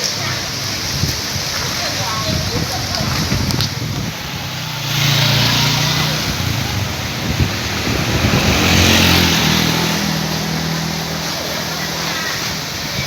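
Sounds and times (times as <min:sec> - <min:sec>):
storm wind blowing hard: 0:00.4 - 0:10.7.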